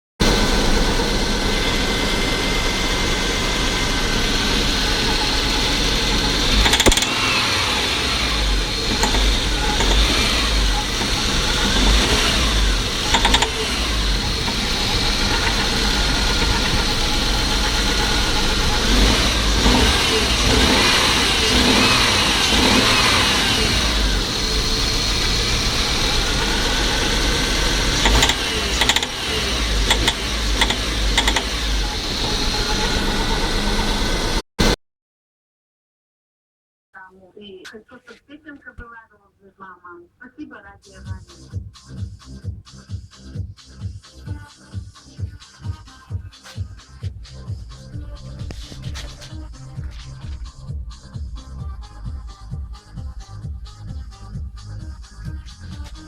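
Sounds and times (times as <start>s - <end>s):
car engine knocking: 0.2s - 34.8s, 47.6s - 56.0s.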